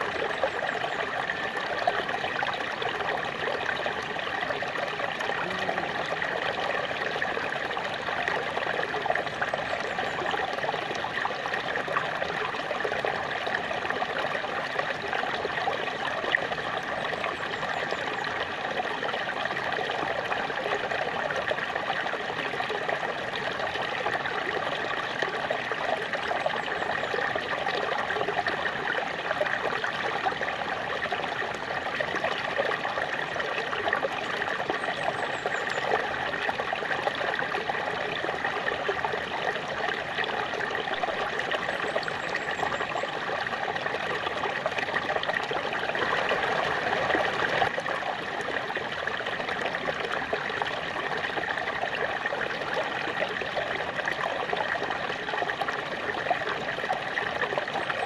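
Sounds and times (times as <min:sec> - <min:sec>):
small waterfall splashing: 0:00.0 - 0:58.0.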